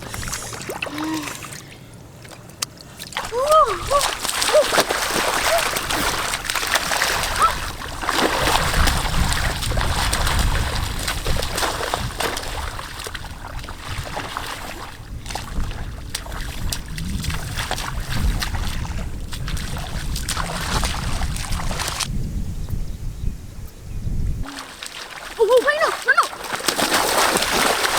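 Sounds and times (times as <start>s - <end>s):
water splashing and sloshing: 0.0s - 22.1s, 24.4s - 27.9s.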